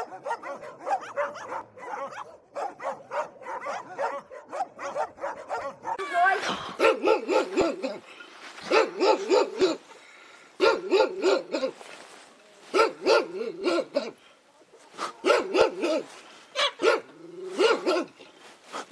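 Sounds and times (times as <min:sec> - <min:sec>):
dog barking: 0:00.0 - 0:06.0, 0:06.8 - 0:07.9, 0:08.7 - 0:09.8, 0:10.6 - 0:11.8, 0:12.7 - 0:14.2, 0:15.2 - 0:18.1.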